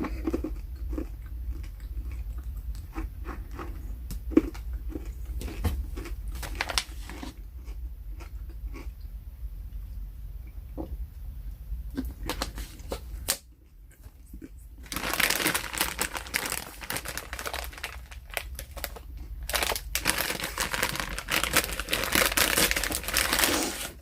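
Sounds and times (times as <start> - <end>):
candy packaging crinkling: 5.4 - 7.4, 14.1 - 24.0.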